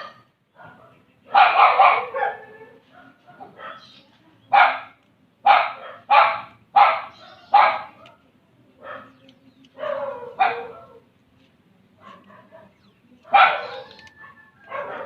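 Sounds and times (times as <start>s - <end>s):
dog barking: 0.0s - 8.2s, 8.8s - 9.2s, 9.8s - 11.0s, 12.0s - 15.0s.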